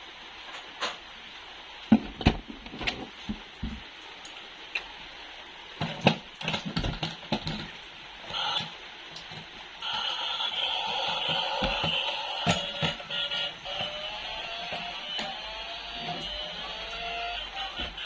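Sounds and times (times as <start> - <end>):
plastic toys clicking and knocking: 5.8 - 18.0.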